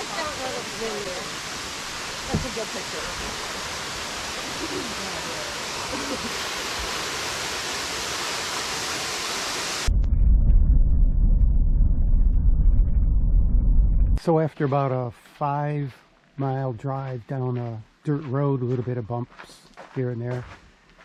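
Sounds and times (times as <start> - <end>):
waterfall rushing: 0.0 - 9.9.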